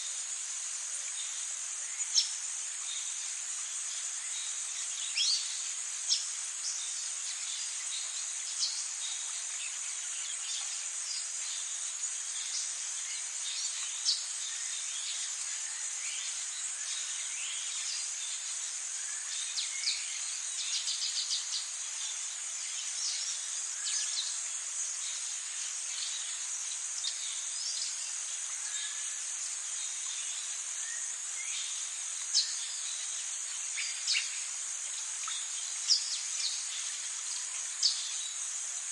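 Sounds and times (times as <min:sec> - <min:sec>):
high-pitched insect chorus: 0:00.0 - 0:38.9.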